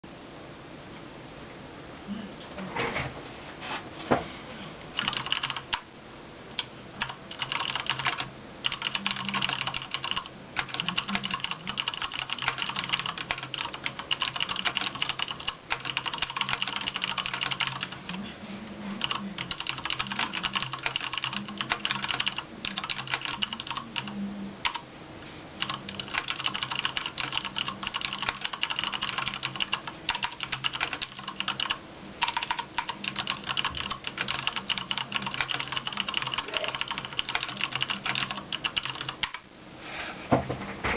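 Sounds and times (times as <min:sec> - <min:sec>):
mechanical keyboard typing: 0:05.0 - 0:05.9, 0:06.6 - 0:18.2, 0:19.0 - 0:24.8, 0:25.6 - 0:39.4.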